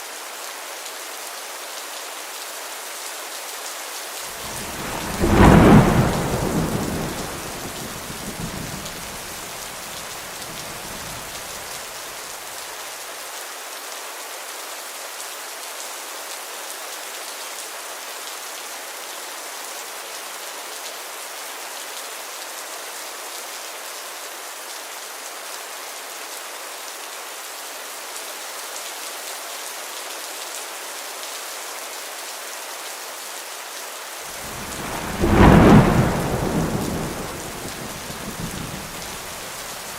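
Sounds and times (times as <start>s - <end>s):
heavy rain: 0.0s - 39.9s
thunder rumbling: 4.4s - 11.7s, 34.3s - 39.9s.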